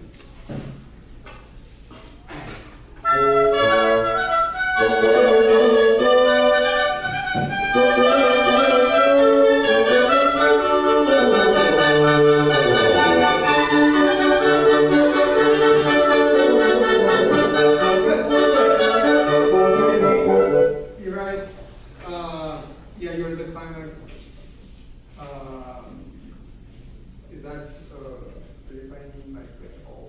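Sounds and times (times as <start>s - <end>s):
orchestral woodwinds playing: 3.0s - 21.0s.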